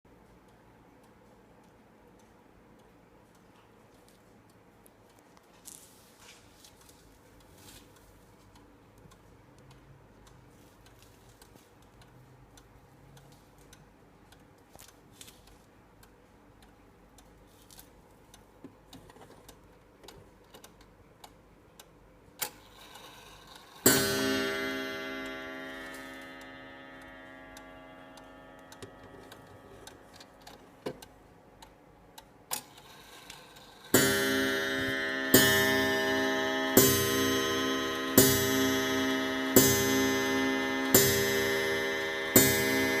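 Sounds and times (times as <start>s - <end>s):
clock ticking faintly: 0.1s - 5.8s, 6.5s - 43.0s
clock striking with ringing tone: 23.0s - 31.6s, 32.6s - 43.0s.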